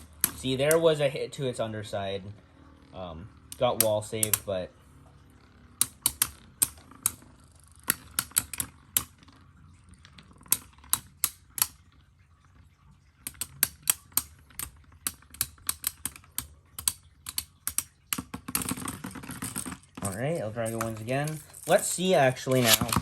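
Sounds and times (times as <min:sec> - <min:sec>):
spinning tops clashing in plastic: 0:05.8 - 0:12.0, 0:13.2 - 0:23.0.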